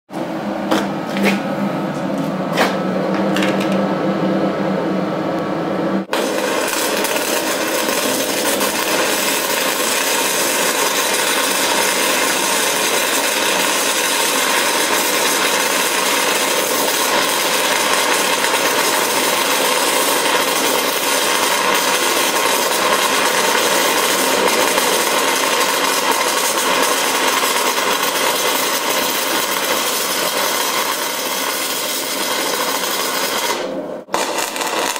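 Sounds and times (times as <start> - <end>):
low hum: 0.2 - 6.1
welding arc crackling: 6.0 - 34.9.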